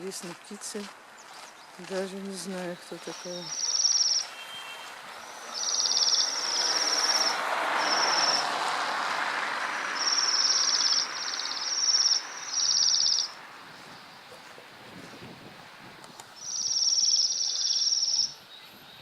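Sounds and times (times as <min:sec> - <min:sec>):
small bird trilling: 0:03.2 - 0:04.3, 0:05.2 - 0:08.4, 0:10.0 - 0:13.4, 0:16.4 - 0:18.4.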